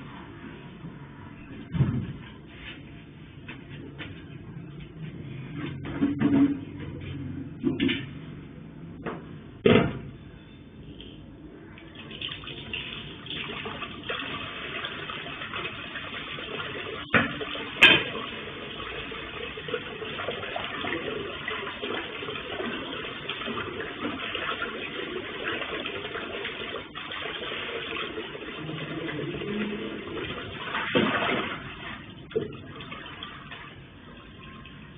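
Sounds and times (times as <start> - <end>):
water running from a tap: 11.8 - 34.9.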